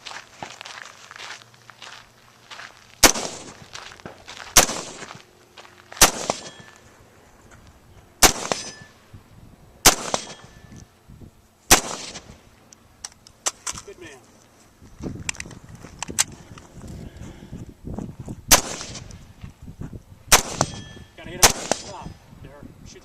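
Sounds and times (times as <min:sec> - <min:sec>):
rifle shots: 0:03.0 - 0:05.2, 0:06.0 - 0:06.8, 0:08.2 - 0:09.0, 0:09.8 - 0:10.6, 0:11.7 - 0:12.4, 0:18.5 - 0:19.1, 0:20.3 - 0:22.2.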